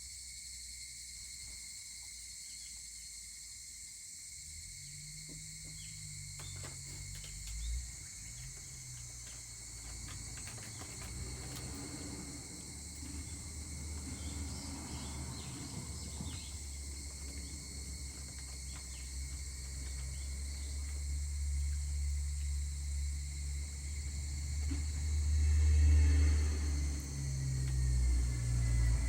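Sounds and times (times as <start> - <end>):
insects chorus: 0.0 - 29.0
low rumble: 12.2 - 29.0.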